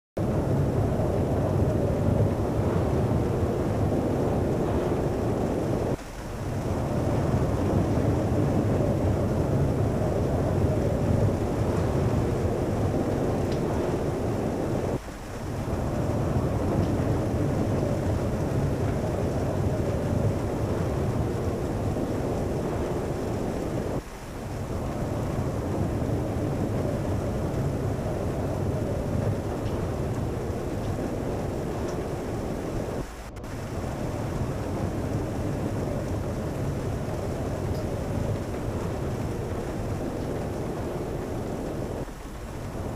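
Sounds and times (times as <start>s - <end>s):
strong wind on microphone: 0.2s - 42.9s.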